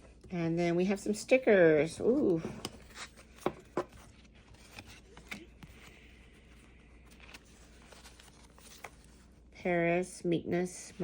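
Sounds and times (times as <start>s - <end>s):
paper rustling: 2.5s - 9.4s.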